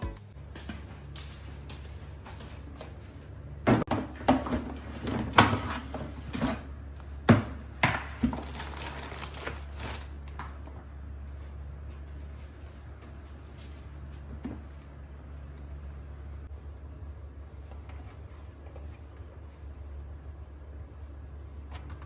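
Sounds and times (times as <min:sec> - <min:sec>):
kitchen knocks and clatters: 0:03.6 - 0:06.7.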